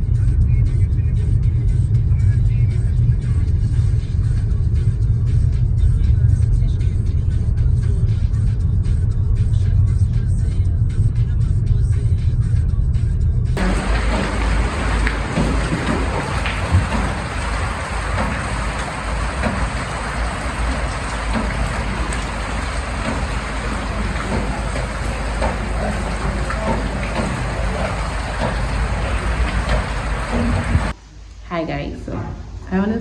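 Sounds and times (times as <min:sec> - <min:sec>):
rain-like hiss with ticks: 0:13.6 - 0:30.9.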